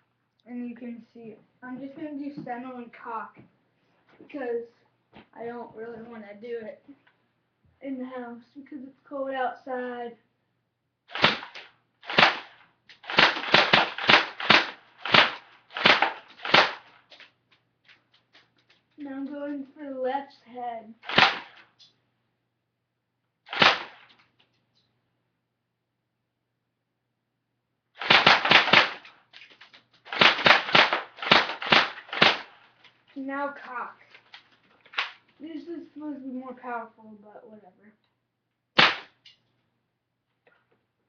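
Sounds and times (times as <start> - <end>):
airsoft gun shots: 11.1 - 17.0, 21.0 - 21.6, 23.5 - 24.2, 28.0 - 29.1, 30.1 - 32.6, 38.8 - 39.2.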